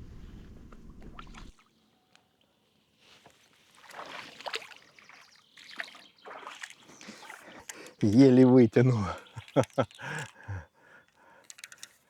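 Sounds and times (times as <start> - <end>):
low rumble: 0.0 - 1.5
water splashing and sloshing: 0.0 - 1.8, 3.0 - 10.6.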